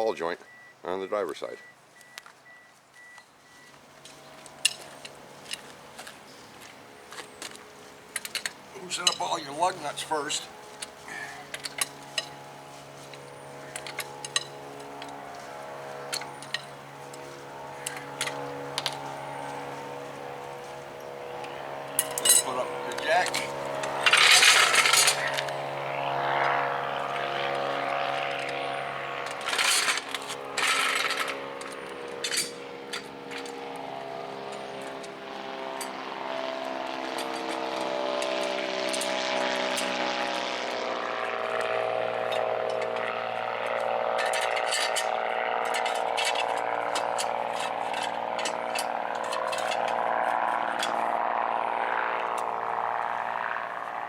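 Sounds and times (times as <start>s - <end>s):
steady mechanical hum: 2.4s - 54.0s.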